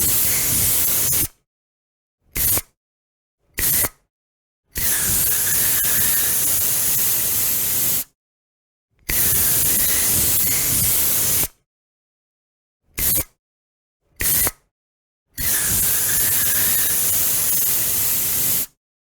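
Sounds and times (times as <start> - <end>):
aerosol spray can hissing: 0.0 - 1.2, 4.9 - 8.1, 15.4 - 18.8.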